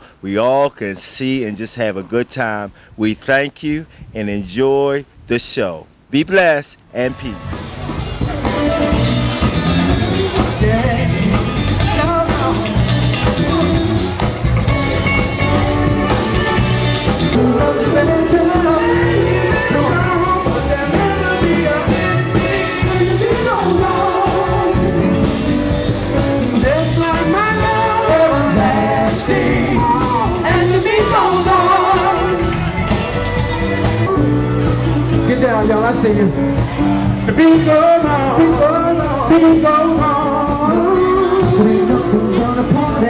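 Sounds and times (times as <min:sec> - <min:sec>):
band with steady beat: 0:07.0 - 0:43.0
person singing: 0:08.3 - 0:14.3, 0:17.0 - 0:25.7, 0:26.4 - 0:32.8, 0:37.3 - 0:43.0.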